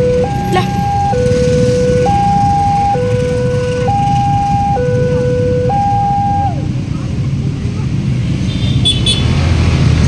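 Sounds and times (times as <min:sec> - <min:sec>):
two-tone level crossing siren: 0:00.0 - 0:06.7
road traffic rumble: 0:00.0 - 0:10.0.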